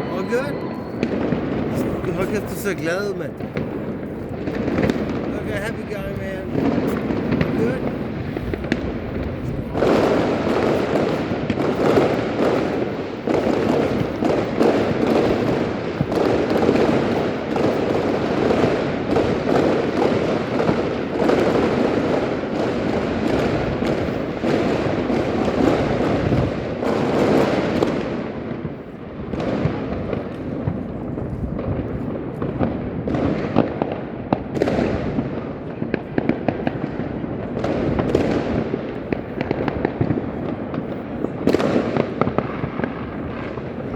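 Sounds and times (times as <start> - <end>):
fireworks bangs and crackling: 0.0 - 43.9.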